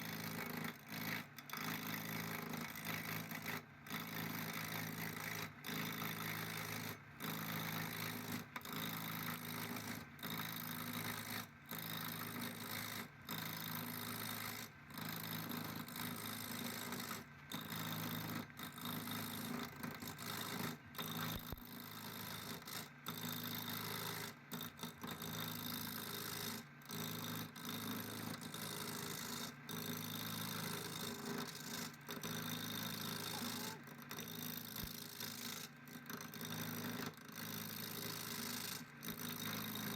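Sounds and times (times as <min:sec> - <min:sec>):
motor-driven machine humming: 0:32.8 - 0:34.9.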